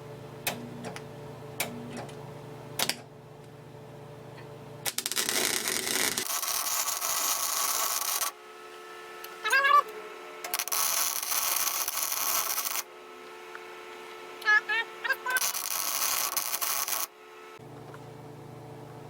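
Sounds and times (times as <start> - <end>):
low steady hum: 0.0 - 6.2, 11.5 - 19.0
welding arc crackling: 4.8 - 8.4, 9.3 - 12.9, 14.4 - 17.2.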